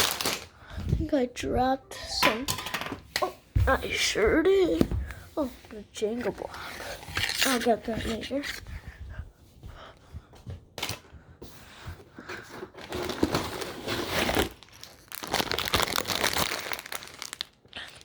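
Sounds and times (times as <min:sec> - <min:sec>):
plastic bags crinkling: 0:00.0 - 0:00.6, 0:12.8 - 0:18.0.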